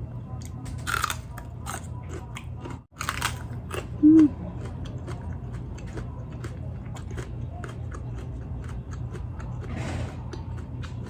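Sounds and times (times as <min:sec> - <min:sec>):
biting and chewing chili pepper: 0:00.3 - 0:11.0
person humming mm: 0:04.0 - 0:04.4.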